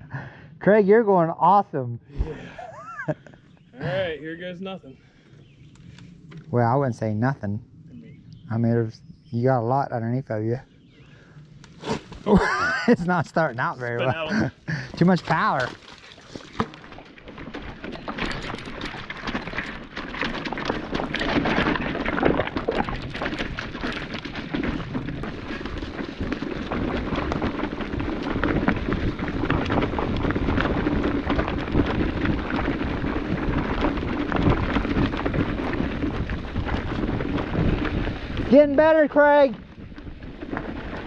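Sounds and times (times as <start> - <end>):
bike rattling over rocks: 11.7 - 41.0
wind buffeting microphone: 16.9 - 41.0.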